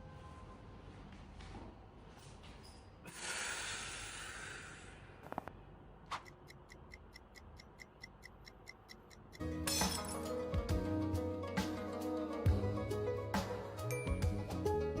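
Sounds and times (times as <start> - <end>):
breath-like rush of noise: 3.1 - 5.5
clock-like ticking: 6.2 - 9.5.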